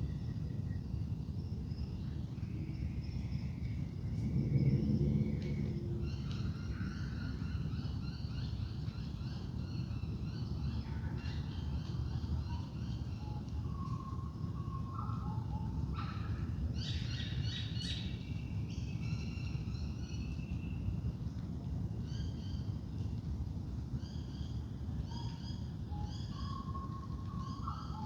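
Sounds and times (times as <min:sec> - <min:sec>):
steady low rumble: 0:01.4 - 0:08.9.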